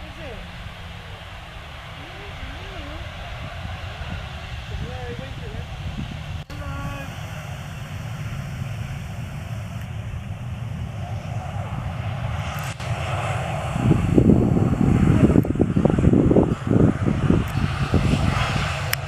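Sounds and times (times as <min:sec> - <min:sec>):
jet engines roaring: 0:00.0 - 0:19.0.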